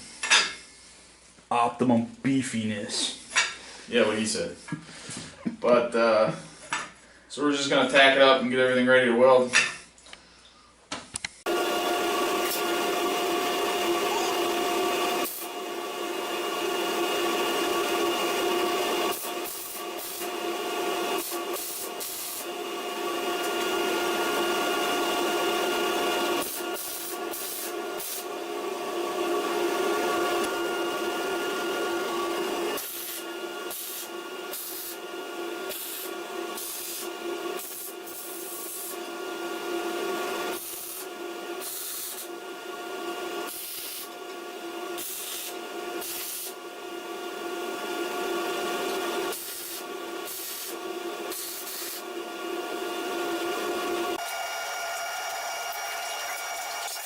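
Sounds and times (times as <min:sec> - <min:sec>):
crackling welding arc: 0:15.1 - 0:15.5, 0:19.1 - 0:20.5, 0:21.2 - 0:22.5, 0:26.4 - 0:28.3, 0:32.8 - 0:35.0, 0:35.7 - 0:37.0, 0:37.6 - 0:39.0, 0:40.5 - 0:42.3, 0:43.5 - 0:44.1, 0:45.0 - 0:46.5, 0:49.4 - 0:52.0.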